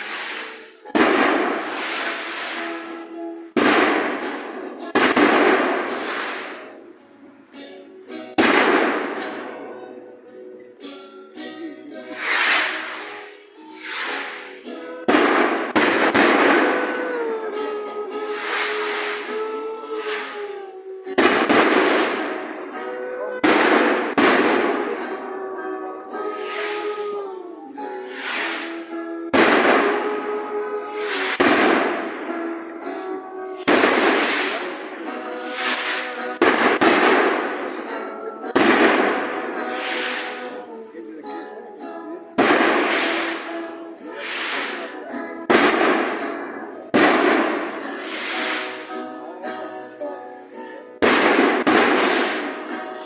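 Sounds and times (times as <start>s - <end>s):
loud sudden bangs: 0.0s - 2.9s, 3.6s - 6.6s, 13.8s - 17.1s, 21.2s - 25.2s, 28.1s - 30.2s, 35.5s - 40.5s, 42.4s - 43.6s
music with held notes: 0.0s - 53.0s.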